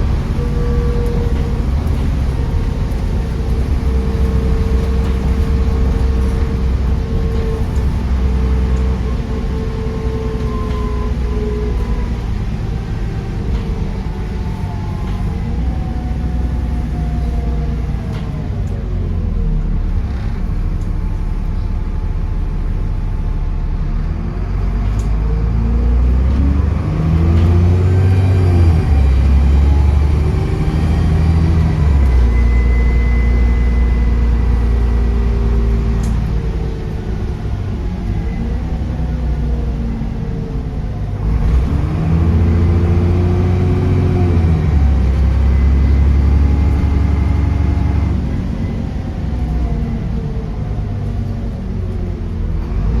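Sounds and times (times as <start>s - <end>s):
bus diesel engine revving: 0.0s - 53.0s.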